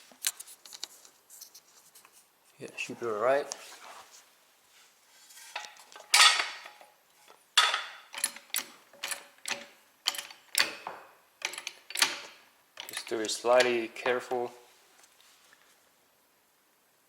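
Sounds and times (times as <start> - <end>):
trolley jack pumping clanks: 7.6 - 14.2.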